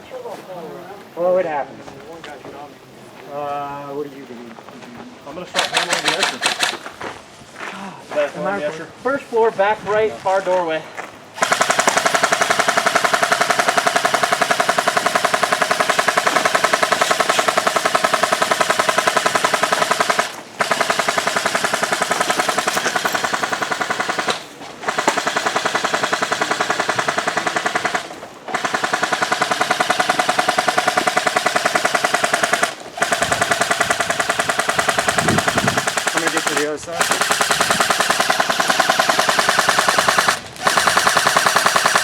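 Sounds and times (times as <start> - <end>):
airsoft gun firing bursts: 5.5 - 6.9, 11.4 - 42.0.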